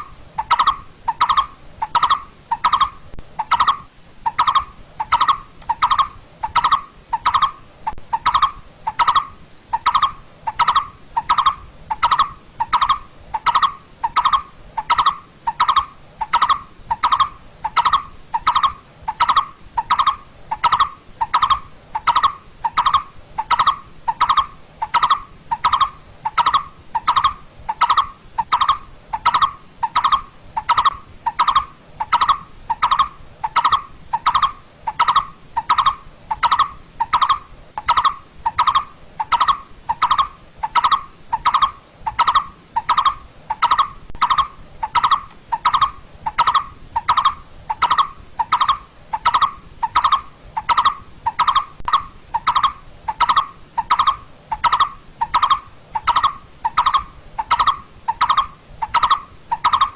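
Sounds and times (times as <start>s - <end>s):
bird calling hollow tuk notes: 0.0s - 59.9s.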